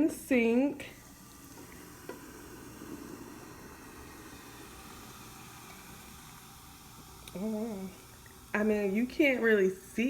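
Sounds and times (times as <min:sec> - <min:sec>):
vinegar fizzing in drain: 0:00.8 - 0:10.0.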